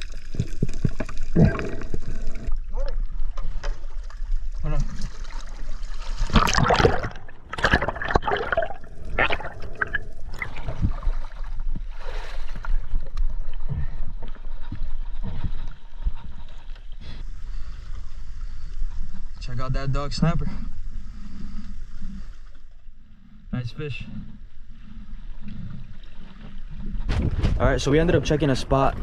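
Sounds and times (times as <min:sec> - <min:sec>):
seawater splashing and gurgling: 0:00.0 - 0:18.6.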